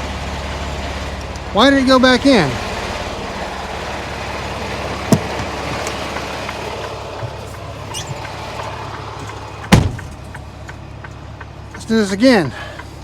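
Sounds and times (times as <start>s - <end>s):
diesel engine idling: 0.0s - 13.0s
sharp knocks: 5.1s - 7.4s, 9.2s - 10.4s.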